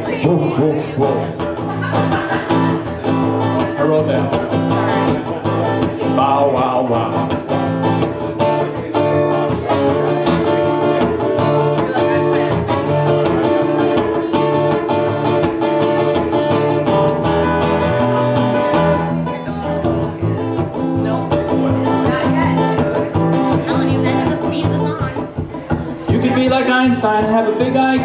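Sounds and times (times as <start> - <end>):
acoustic guitar strumming: 0.0 - 28.0.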